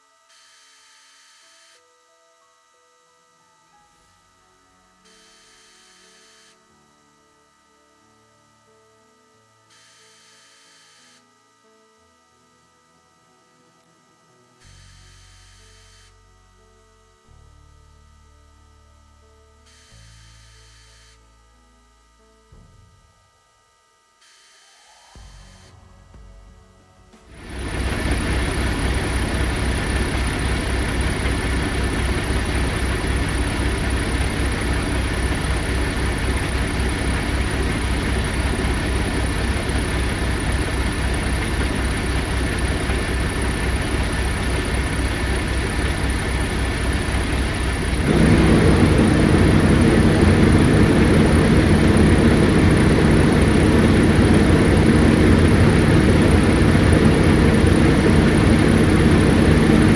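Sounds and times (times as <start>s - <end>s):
diesel truck engine idling: 27.4s - 59.9s.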